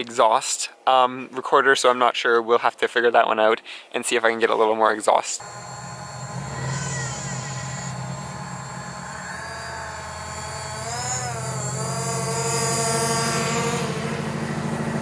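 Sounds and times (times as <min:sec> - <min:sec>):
drone propellers whirring: 0:05.4 - 0:15.0
low steady hum: 0:05.4 - 0:15.0.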